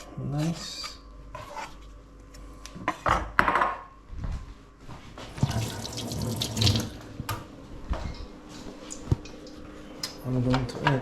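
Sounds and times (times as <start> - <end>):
tap water splashing into sink: 5.3 - 7.5.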